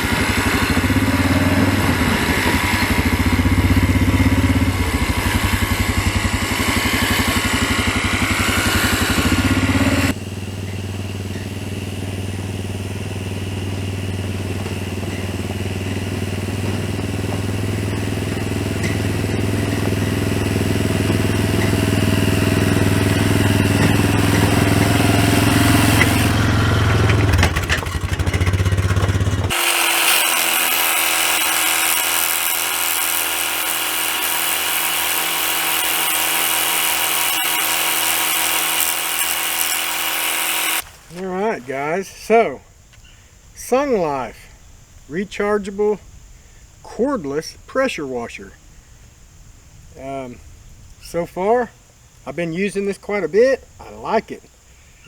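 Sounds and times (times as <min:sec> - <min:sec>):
electric motor whine: 0:00.0 - 0:41.2
four-wheeler engine running: 0:00.0 - 0:42.1.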